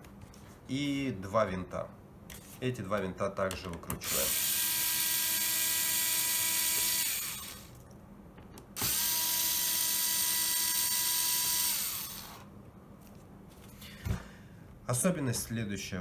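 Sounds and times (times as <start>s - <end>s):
electric screwdriver whining: 4.0s - 7.8s, 8.8s - 12.5s.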